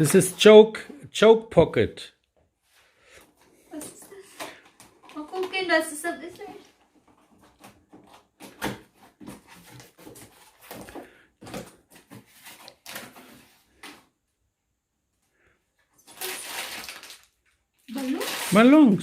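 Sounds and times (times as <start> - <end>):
package rustling: 16.0 - 19.0.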